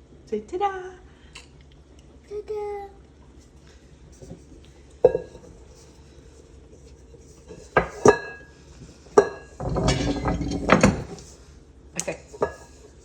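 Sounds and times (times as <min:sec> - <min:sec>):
metal utensils clinking: 0:09.2 - 0:11.2
utensils rattling and scraping: 0:09.2 - 0:11.3.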